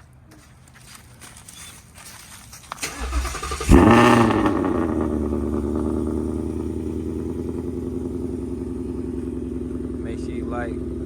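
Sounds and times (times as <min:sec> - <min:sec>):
car engine fast idle: 0:02.8 - 0:11.0.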